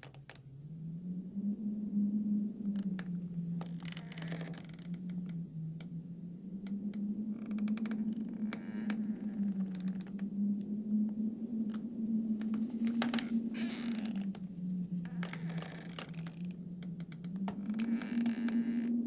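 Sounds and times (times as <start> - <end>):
house creaking: 3.6 - 4.9, 12.4 - 14.4, 15.1 - 18.8
steady low hum: 4.9 - 19.0.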